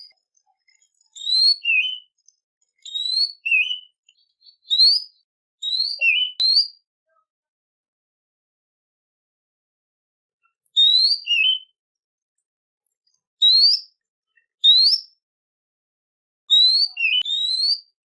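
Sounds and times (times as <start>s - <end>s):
songbird whistles: 1.0s - 2.2s, 2.8s - 6.8s, 10.8s - 11.8s, 13.4s - 15.2s, 16.5s - 18.0s.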